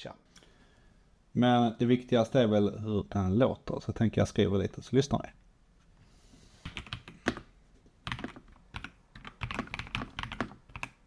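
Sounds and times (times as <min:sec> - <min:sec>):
mechanical keyboard typing: 0:06.7 - 0:11.0.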